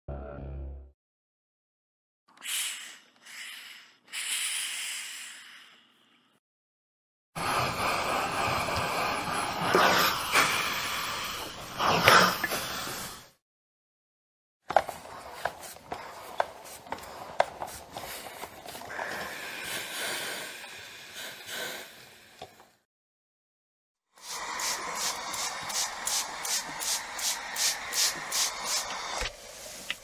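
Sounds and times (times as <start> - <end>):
steam iron hissing: 7.4 - 13.3, 16.0 - 22.5, 24.2 - 30.0.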